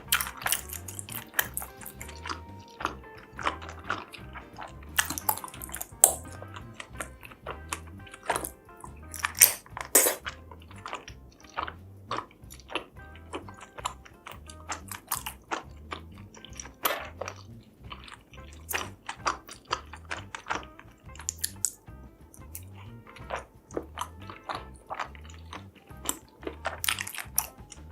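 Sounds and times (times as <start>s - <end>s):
background music with low beat: 0.0s - 27.9s
chewing and biting: 0.0s - 27.9s
wet mouth clicks: 0.0s - 27.9s.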